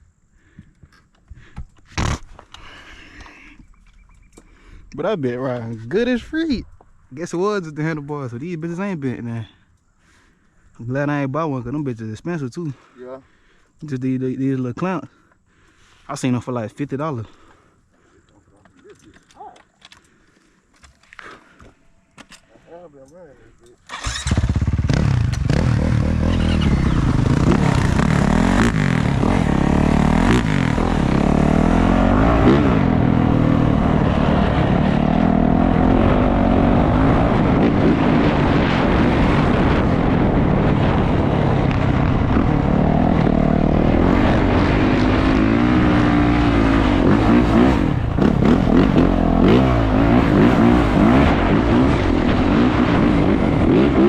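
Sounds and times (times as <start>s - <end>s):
dirt bike engine revving: 23.9s - 54.0s.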